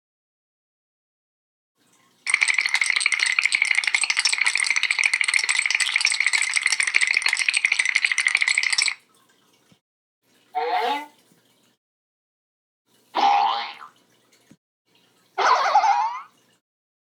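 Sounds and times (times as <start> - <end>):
rapid continuous rattling: 2.3 - 9.0.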